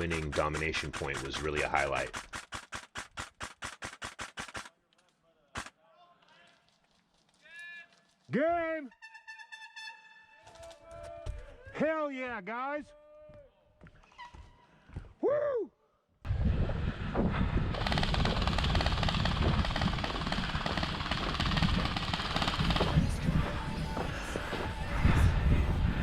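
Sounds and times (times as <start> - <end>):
rapid gunfire clatter: 0.0 - 4.7, 17.7 - 23.6
steady low rumble: 16.3 - 26.0.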